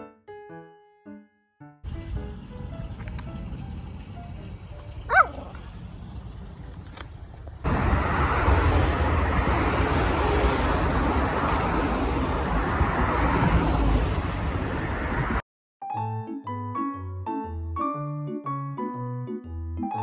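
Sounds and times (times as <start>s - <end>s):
loud steady rumbling: 1.9s - 11.4s
small dog yip: 5.1s - 5.6s.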